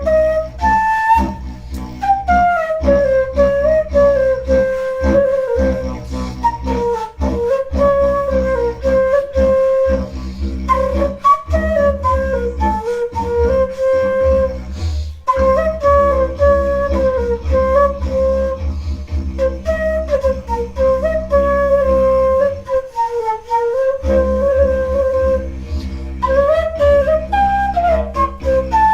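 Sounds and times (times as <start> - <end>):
deep bass: 0.0 - 22.9, 24.0 - 28.9
flute-like lead melody: 0.0 - 28.9
percussive beat: 1.2 - 6.5.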